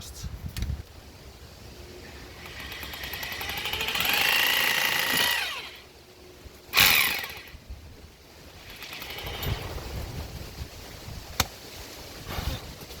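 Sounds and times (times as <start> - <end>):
electric hammer drill whining: 2.2 - 5.8, 6.7 - 7.6, 8.6 - 9.8.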